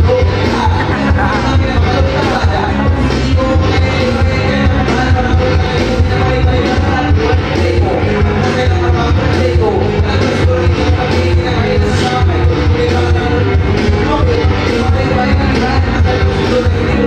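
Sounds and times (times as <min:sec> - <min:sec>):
loud bass line: 0:00.0 - 0:17.0
song with vocals: 0:00.0 - 0:17.0.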